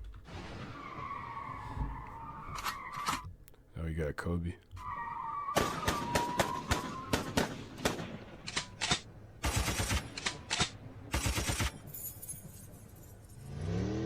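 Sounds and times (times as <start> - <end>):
sharp bangs and clicks: 5.6 - 13.3.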